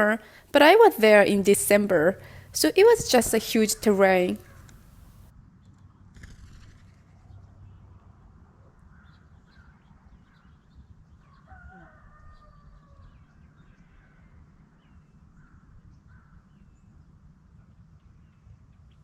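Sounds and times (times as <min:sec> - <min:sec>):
rooster crowing: 0:11.3 - 0:13.2.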